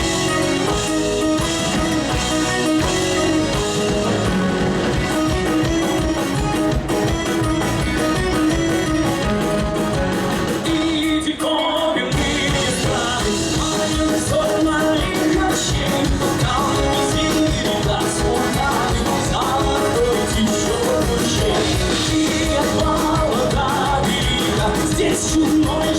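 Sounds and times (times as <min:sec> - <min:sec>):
rock band playing live: 0:00.0 - 0:25.9
person singing: 0:10.6 - 0:25.9.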